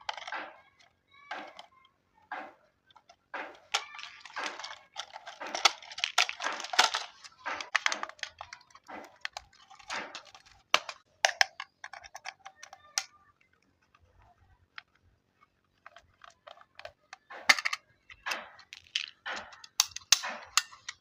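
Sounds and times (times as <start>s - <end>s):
sharp plastic clicks: 0.0s - 21.0s
plastic packaging crinkling: 3.6s - 11.0s.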